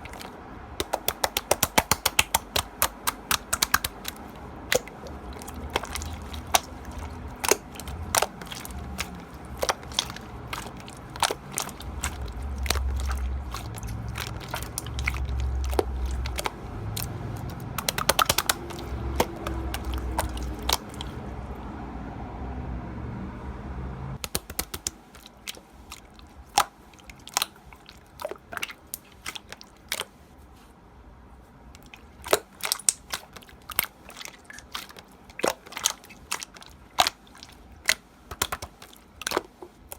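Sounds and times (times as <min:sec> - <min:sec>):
slime clicking and popping: 0:00.0 - 0:21.2, 0:24.2 - 0:30.1, 0:31.8 - 0:39.9.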